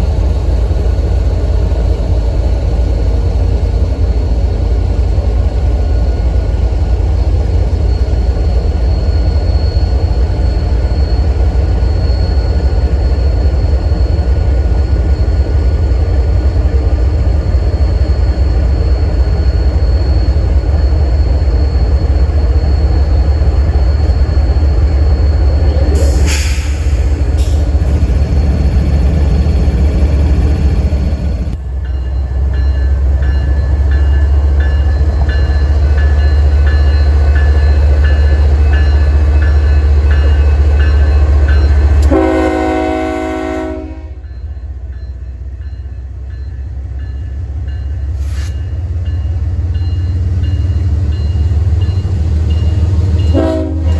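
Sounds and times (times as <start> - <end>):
freight train rumbling past: 0.0 - 53.9
short hissing burst: 48.2 - 48.6.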